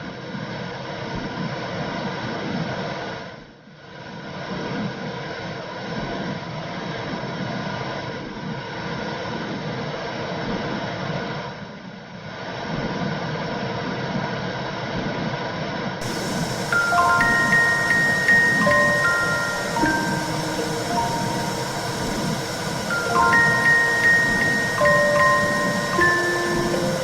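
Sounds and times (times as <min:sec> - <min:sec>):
steady whooshing womb noise: 0:16.0 - 0:27.0.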